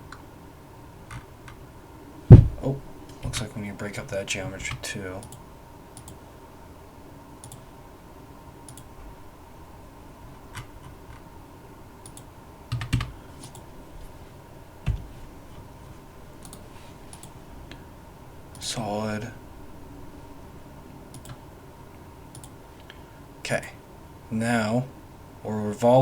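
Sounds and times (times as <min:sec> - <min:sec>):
mouse clicks: 0:08.7 - 0:08.9.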